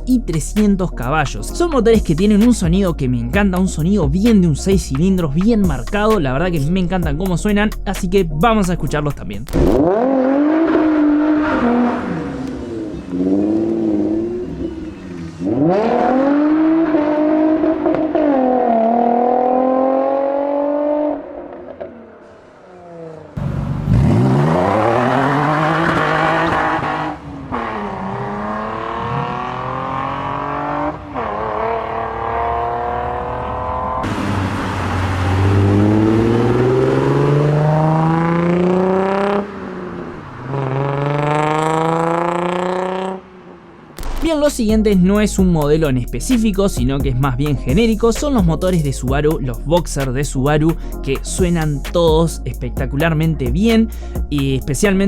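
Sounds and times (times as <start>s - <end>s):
car engines revving: 9.4s - 45.8s.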